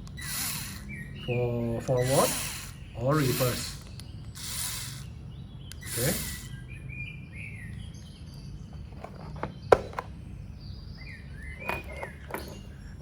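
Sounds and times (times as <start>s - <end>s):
faint birds chirping: 0.0s - 13.0s
sharp clicks: 5.7s - 6.6s.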